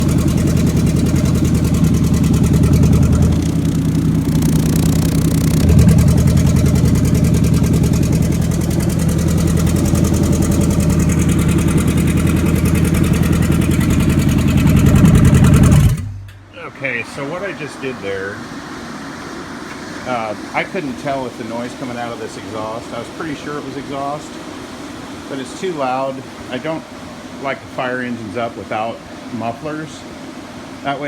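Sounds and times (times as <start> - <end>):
engine idling with crackling exhaust: 0.0 - 16.6.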